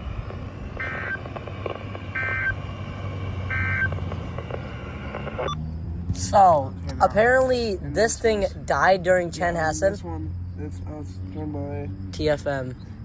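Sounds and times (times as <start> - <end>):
steady low rumble: 0.0 - 13.0
short electronic beeps: 2.2 - 2.6, 3.5 - 4.0.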